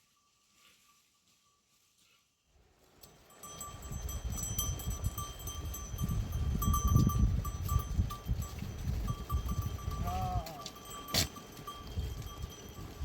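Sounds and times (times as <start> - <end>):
herd bells jingling: 3.0 - 13.0.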